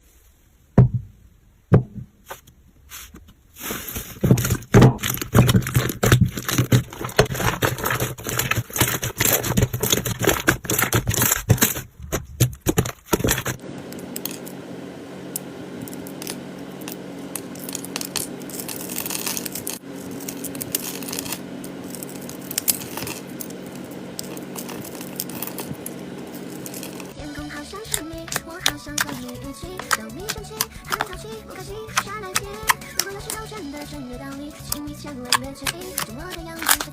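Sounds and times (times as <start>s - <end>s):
crackling clicks of slime: 27.9s - 31.2s, 34.7s - 36.9s.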